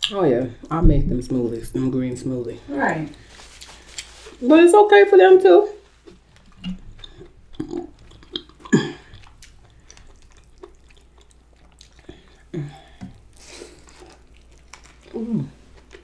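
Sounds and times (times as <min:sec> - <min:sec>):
person chewing food: 0:02.9 - 0:04.4, 0:05.9 - 0:16.0.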